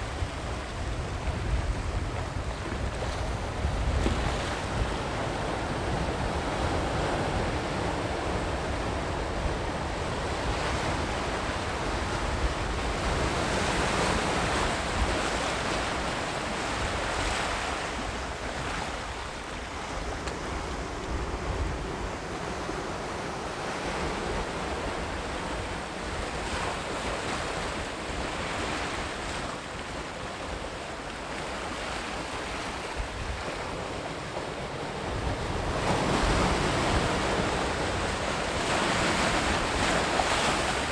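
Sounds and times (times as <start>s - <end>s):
sea waves breaking on beach: 0.0s - 40.9s.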